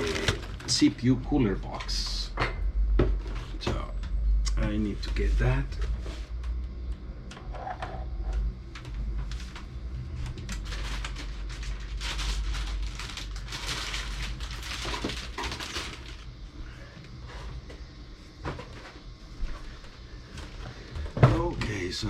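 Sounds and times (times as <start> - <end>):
cardboard packaging rustling: 0.0 - 0.8, 10.4 - 16.3.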